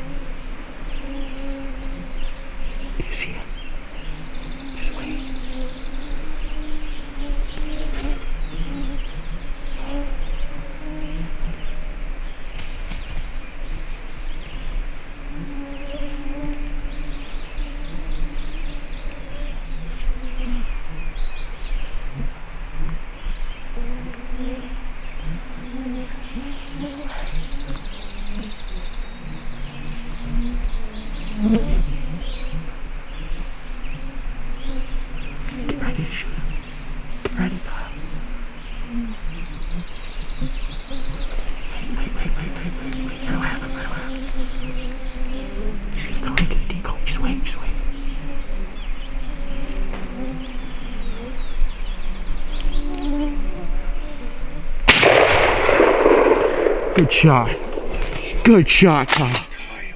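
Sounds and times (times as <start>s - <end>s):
insects buzzing: 0.0s - 59.9s
bird singing trills: 0.8s - 12.6s, 15.6s - 22.0s, 24.4s - 54.2s, 54.9s - 59.9s
shotgun blast echoing: 54.9s - 59.6s.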